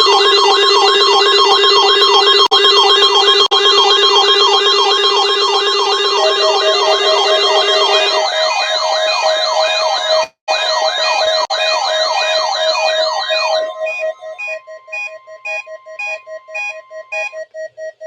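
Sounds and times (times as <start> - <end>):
steady and beeping alert tones: 3.6 - 17.5
wailing siren-like tone: 3.6 - 17.6.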